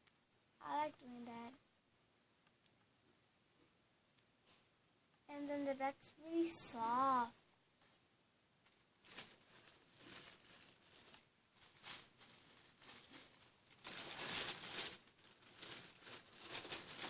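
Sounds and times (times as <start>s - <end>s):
foam toy squeezed rustling: 9.0s - 17.0s.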